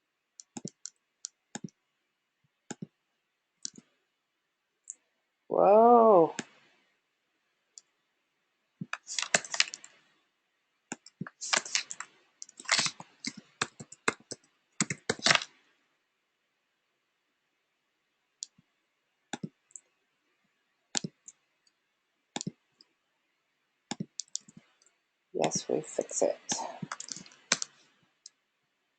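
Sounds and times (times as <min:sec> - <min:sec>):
key or mouse clicks: 0:00.4 - 0:01.0, 0:23.9 - 0:24.6, 0:26.8 - 0:27.7
keyboard typing: 0:00.4 - 0:01.0, 0:01.6 - 0:01.8, 0:02.7 - 0:02.9, 0:03.6 - 0:03.8, 0:08.8 - 0:09.9, 0:10.9 - 0:15.4, 0:19.4 - 0:19.8, 0:21.0 - 0:21.4, 0:22.4 - 0:22.6, 0:23.9 - 0:24.6, 0:26.5 - 0:27.8.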